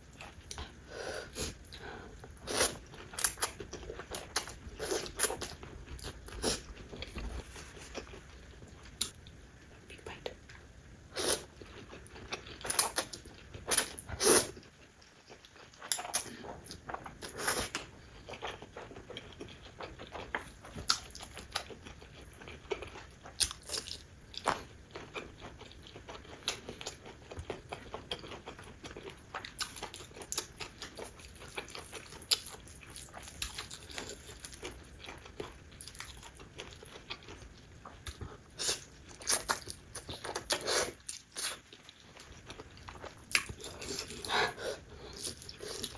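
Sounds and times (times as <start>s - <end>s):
crunchy chewing: 11.2s - 45.9s.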